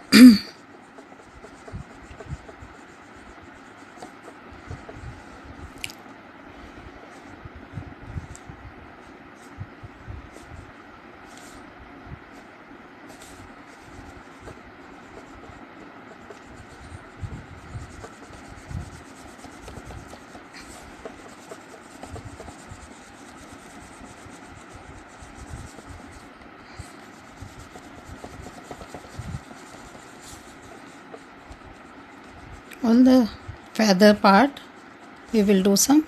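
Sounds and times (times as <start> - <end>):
pencil rubbing on paper: 0.6 - 5.5, 12.3 - 33.4, 34.0 - 36.0.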